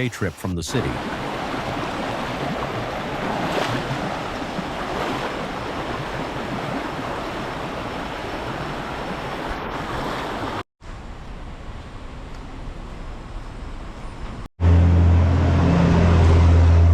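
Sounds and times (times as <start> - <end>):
water rushing from waterfall: 0.4 - 10.6.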